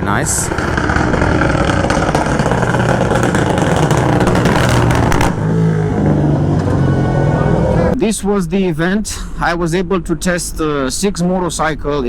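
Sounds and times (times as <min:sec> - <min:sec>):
motorcycle engine running: 0:00.0 - 0:08.0.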